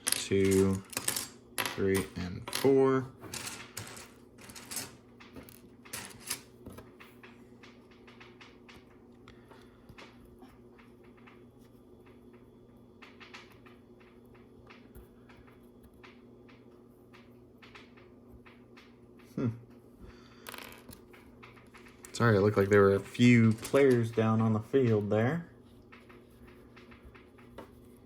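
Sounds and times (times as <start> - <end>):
faint steady hum: 0.0 - 28.0.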